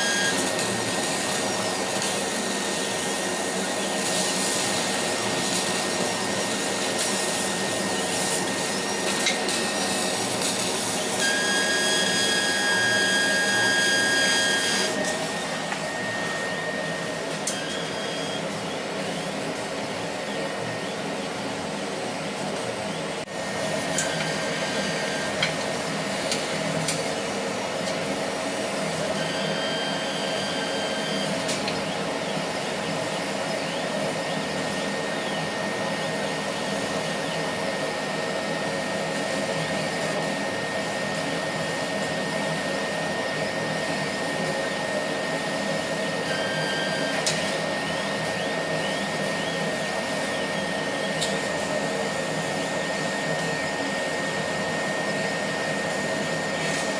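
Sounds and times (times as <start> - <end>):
laser cutter fans rushing: 0.0 - 56.9.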